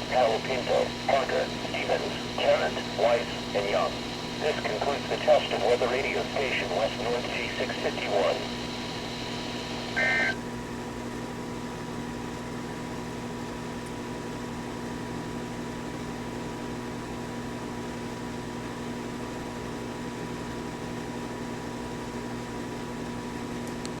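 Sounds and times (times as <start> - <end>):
low hum: 0.0 - 10.4
radio static hiss: 0.0 - 10.4.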